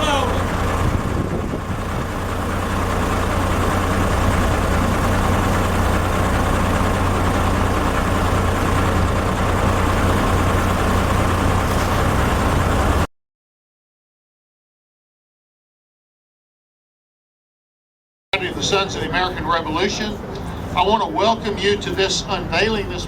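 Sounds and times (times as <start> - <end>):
low engine rumble: 0.0 - 13.1, 18.4 - 23.0.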